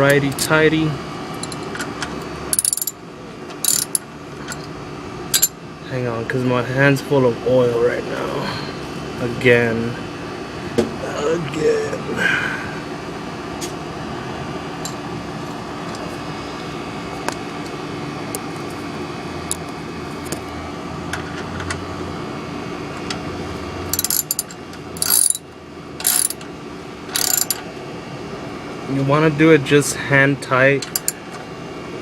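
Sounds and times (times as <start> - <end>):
background hum: 0.0 - 5.7, 23.8 - 27.9
ratchet wrench clicking: 1.4 - 1.7, 2.5 - 3.0, 3.6 - 4.0, 23.9 - 26.4, 27.1 - 27.6, 30.9 - 31.2.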